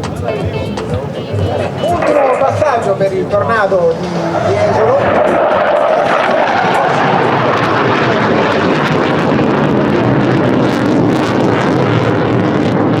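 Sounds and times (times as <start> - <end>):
jet aircraft flying over: 0.0 - 13.0.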